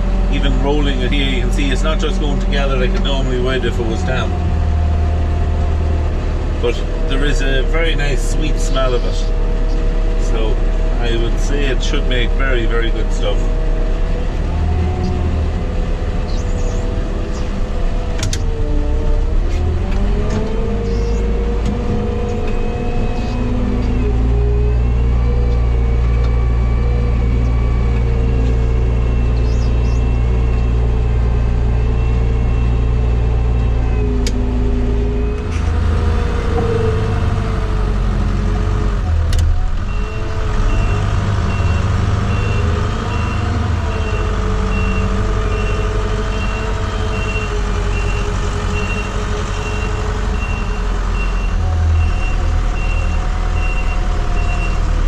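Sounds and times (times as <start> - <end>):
diesel engine running: 0.0 - 55.0
reversing alarm beeping: 22.2 - 34.2, 39.8 - 54.9.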